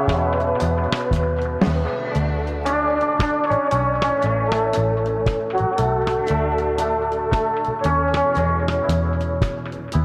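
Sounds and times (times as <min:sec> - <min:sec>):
drum beat: 0:00.0 - 0:04.7
bass line: 0:00.0 - 0:10.0
held notes: 0:00.0 - 0:10.0.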